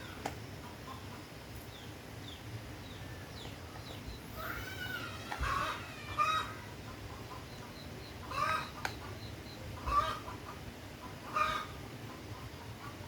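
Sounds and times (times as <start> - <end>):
chicken clucking: 5.3 - 13.0.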